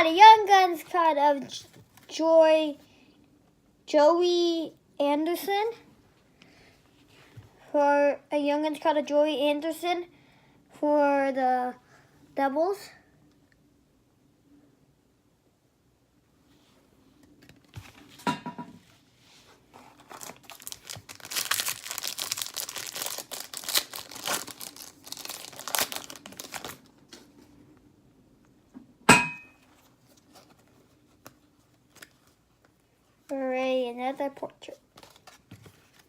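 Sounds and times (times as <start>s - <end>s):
foil wrapper tearing and crinkling: 19.9s - 26.9s.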